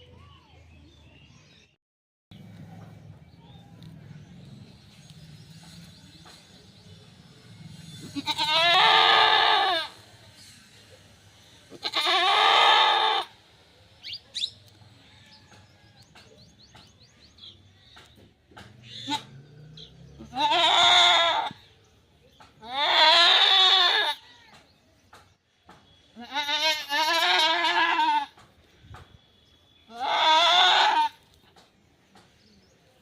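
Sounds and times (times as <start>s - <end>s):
goat bleating: 8.1s - 10.0s, 11.7s - 13.4s, 18.9s - 19.3s, 20.2s - 21.6s, 22.6s - 24.5s, 26.2s - 28.4s, 29.9s - 31.3s.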